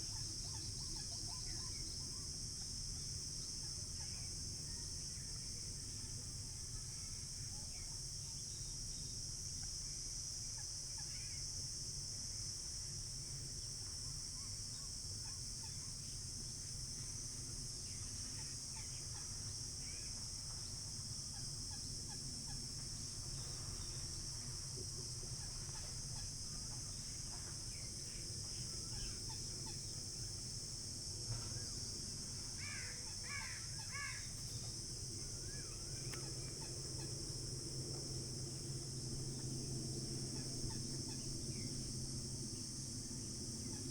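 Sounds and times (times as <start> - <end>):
crickets and insects chirping: 0.0 - 43.9
crows cawing: 32.6 - 34.3
bird calls: 35.3 - 37.3.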